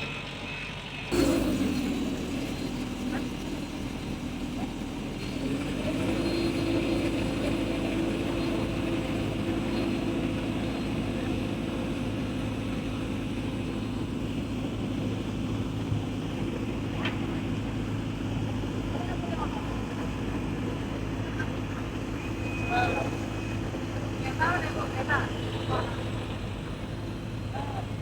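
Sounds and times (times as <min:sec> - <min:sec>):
diesel engine under load: 0:00.0 - 0:28.0.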